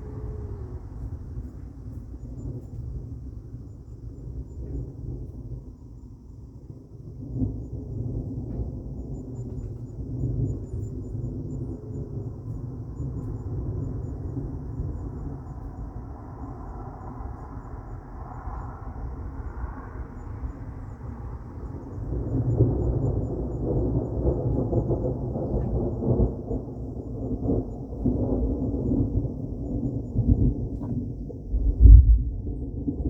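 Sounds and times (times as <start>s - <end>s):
rolling thunder: 6.6s - 33.0s.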